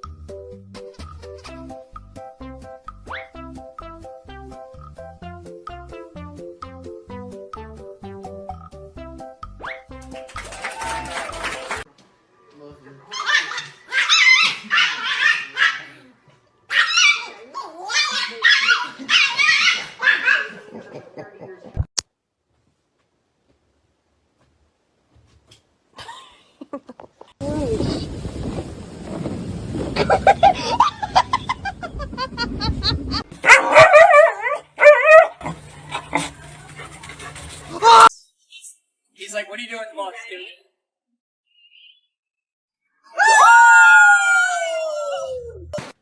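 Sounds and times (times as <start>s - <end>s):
dog barking and yipping: 13.1s - 16.0s, 16.7s - 20.6s, 33.4s - 38.1s.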